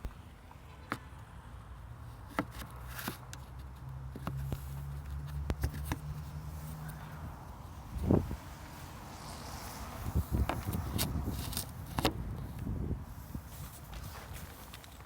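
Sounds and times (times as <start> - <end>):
engine low hum: 3.6 - 15.0.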